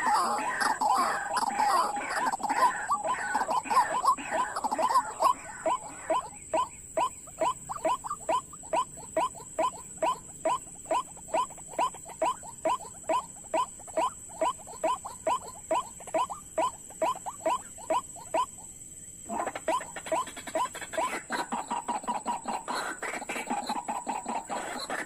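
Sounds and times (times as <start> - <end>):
bird calls sliding downward: 0.0 - 8.4.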